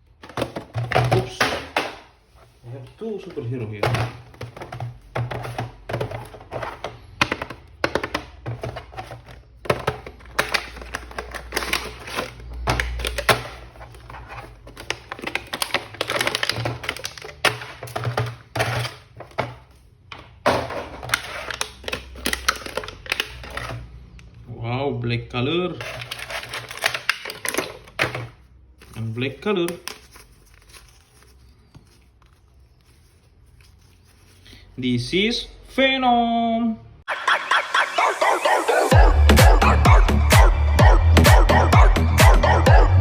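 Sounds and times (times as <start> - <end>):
background music: 37.1 - 43.0.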